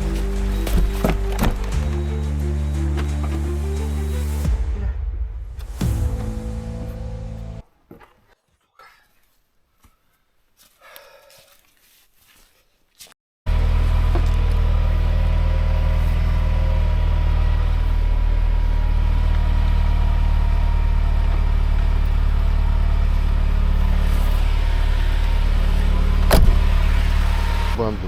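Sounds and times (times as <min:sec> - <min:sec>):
vehicle engine droning: 0:00.0 - 0:04.9, 0:13.5 - 0:28.0.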